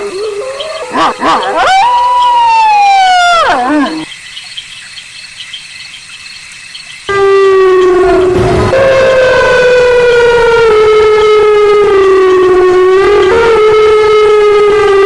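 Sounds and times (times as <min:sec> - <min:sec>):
wavering yip-like call: 0:00.0 - 0:02.5
wolf howling: 0:00.0 - 0:04.1, 0:07.1 - 0:15.0.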